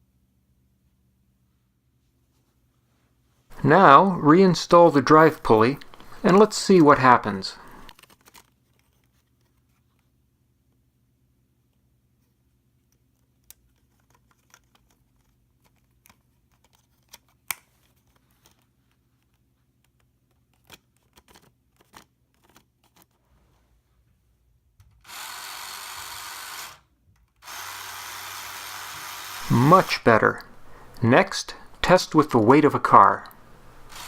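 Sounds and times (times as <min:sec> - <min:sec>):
toy motorized elevator running: 0:25.0 - 0:30.0.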